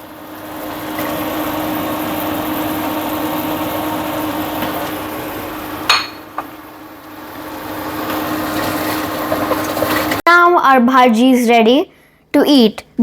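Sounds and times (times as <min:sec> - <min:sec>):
spoon knocking on pot: 0:05.9 - 0:06.5
food being stirred in a pot: 0:07.3 - 0:10.2.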